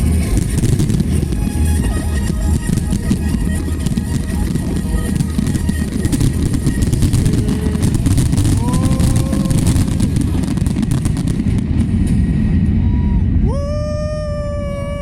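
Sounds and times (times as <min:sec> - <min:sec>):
fireworks crackling: 0:00.0 - 0:12.4
fireworks bursts rumbling: 0:00.0 - 0:15.0
rising wail: 0:06.9 - 0:10.6, 0:12.5 - 0:15.0.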